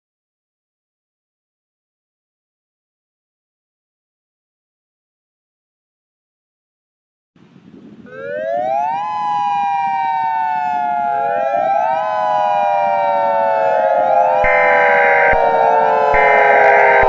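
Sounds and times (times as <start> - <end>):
warning sirens winding: 8.1 - 17.0.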